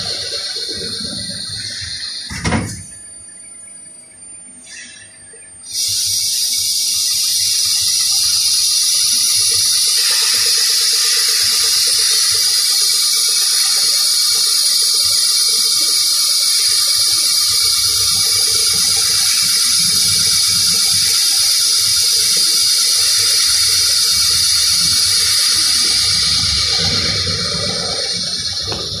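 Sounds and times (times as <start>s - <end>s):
water running in hissing stream: 0.0s - 3.1s, 4.6s - 29.0s.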